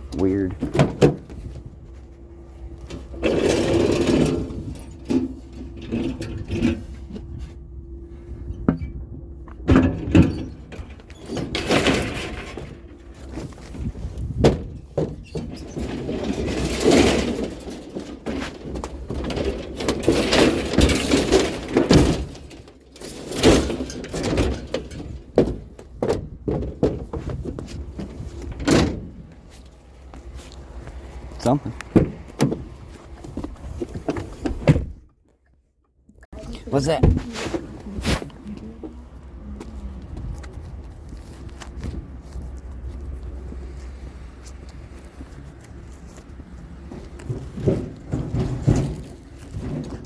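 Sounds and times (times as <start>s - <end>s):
scrap knocking and thunking: 8.4s - 35.1s, 36.9s - 38.3s, 45.1s - 50.0s.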